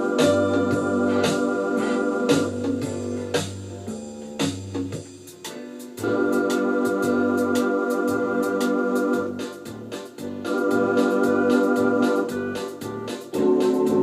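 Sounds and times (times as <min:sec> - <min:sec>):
pulsing bass line: 0:00.0 - 0:05.0
electronic organ chords: 0:00.0 - 0:14.0
steady ticking beat: 0:00.0 - 0:14.0.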